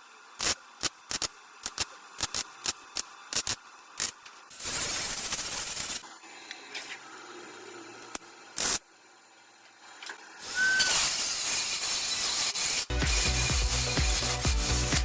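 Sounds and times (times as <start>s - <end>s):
welder crackling hiss: 0.3s - 6.1s, 8.1s - 8.8s, 10.4s - 15.0s.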